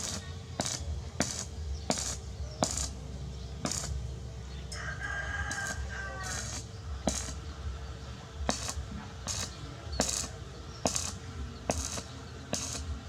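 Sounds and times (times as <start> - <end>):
sharp metallic clicks: 3.6 - 4.0, 8.5 - 13.0
rooster crowing: 4.7 - 6.6.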